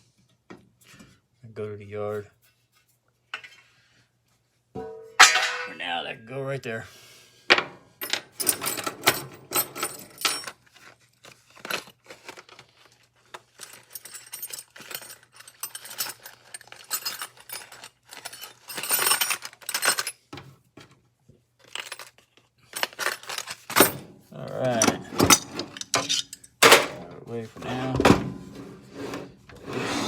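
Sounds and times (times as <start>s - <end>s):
small metal parts clinking: 8.0s - 20.3s, 21.6s - 27.0s.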